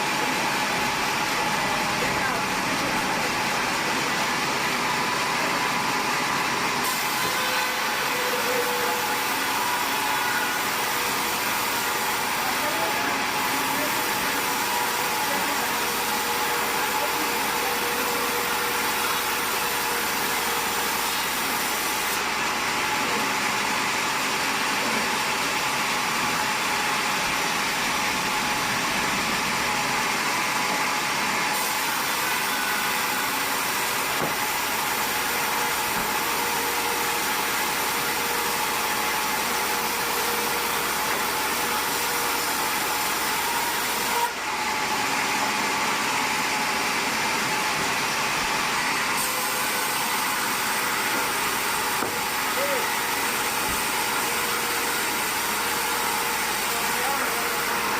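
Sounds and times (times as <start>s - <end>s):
sawmill machinery hiss: 6.8s - 22.8s, 31.5s - 45.1s.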